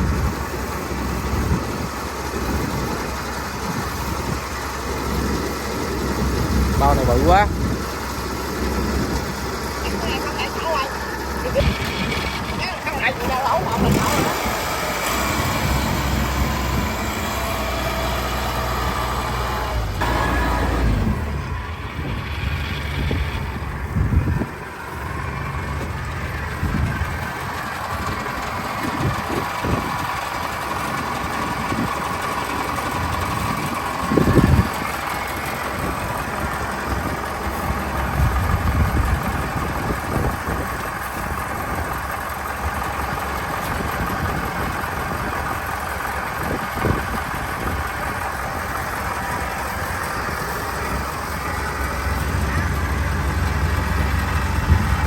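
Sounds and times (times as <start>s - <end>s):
machinery engine humming: 0.0s - 55.0s.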